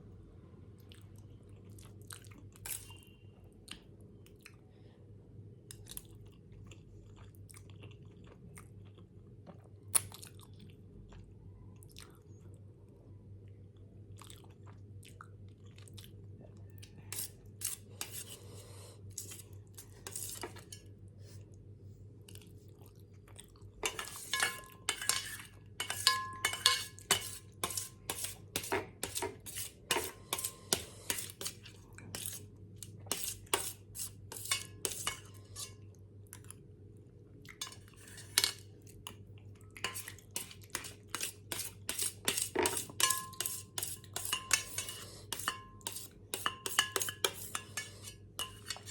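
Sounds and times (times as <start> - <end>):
cutlery clinking against dish: 23.8 - 31.6, 39.8 - 48.9.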